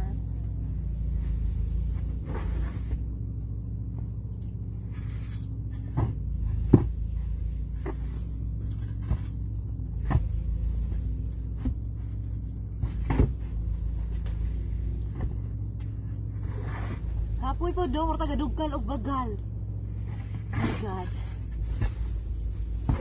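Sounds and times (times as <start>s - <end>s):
steady low rumble: 0.0s - 23.0s
snow shovel scraping snow: 16.5s - 17.2s, 20.1s - 22.3s.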